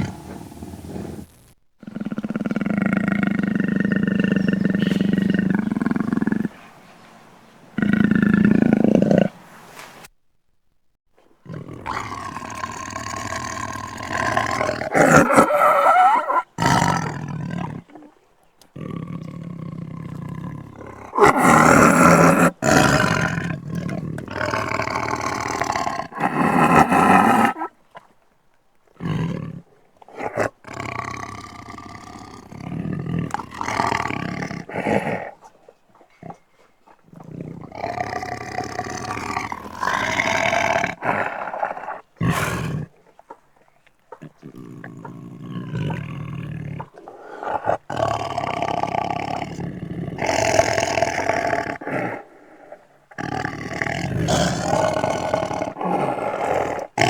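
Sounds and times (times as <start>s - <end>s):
beast growls and roars: 0.0s - 6.6s, 7.8s - 9.4s, 11.4s - 18.1s, 18.8s - 27.7s, 37.2s - 43.0s, 44.2s - 57.0s.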